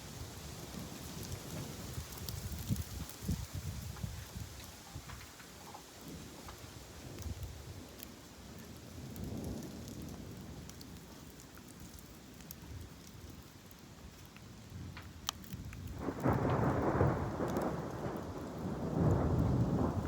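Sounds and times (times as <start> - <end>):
raindrops ticking: 0.2 - 20.0
thunder rumbling: 6.1 - 12.0, 15.6 - 20.0.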